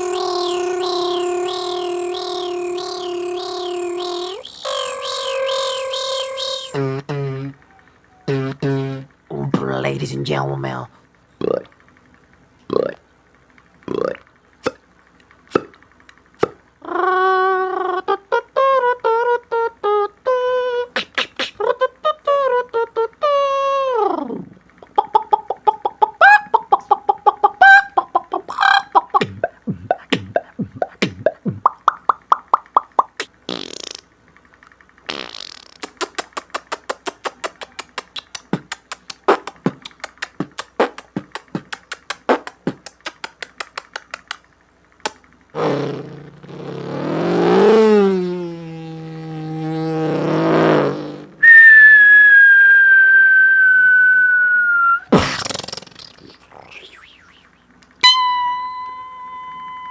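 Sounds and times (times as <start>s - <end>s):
high whistle-like vocal tone: 0.0s - 9.0s, 51.4s - 55.2s, 56.0s - 59.9s
beatboxing vocal effects: 0.0s - 9.6s, 11.4s - 11.7s, 12.7s - 13.1s, 13.8s - 14.8s, 15.5s - 15.8s, 16.4s - 34.1s, 35.1s - 44.4s, 55.1s - 57.7s
low buzzing vocal tone: 0.0s - 11.8s, 12.6s - 13.1s, 13.8s - 14.8s, 16.4s - 25.0s, 28.1s - 31.8s, 45.6s - 51.4s, 53.1s - 57.8s
mouth clicks and ticks: 24.8s - 45.3s.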